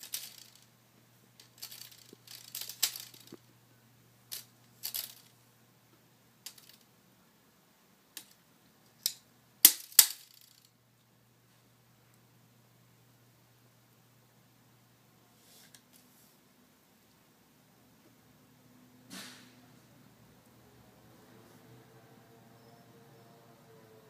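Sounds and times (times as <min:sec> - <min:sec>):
metal tape measure rattling: 0:00.0 - 0:00.7, 0:01.4 - 0:03.4, 0:04.3 - 0:05.3, 0:06.4 - 0:06.8, 0:09.0 - 0:10.7.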